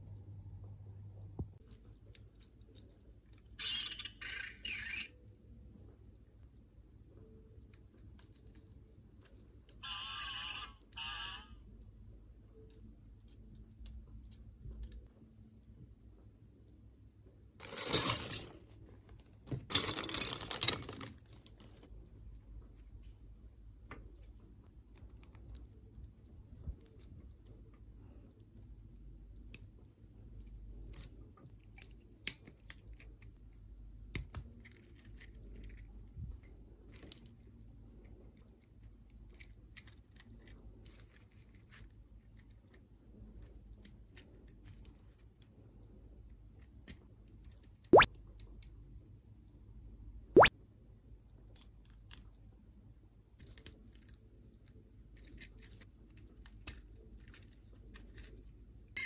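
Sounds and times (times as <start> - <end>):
plastic toy parts clicking: 29.4 - 37.5, 38.3 - 45.5, 51.4 - 52.4, 53.4 - 58.5.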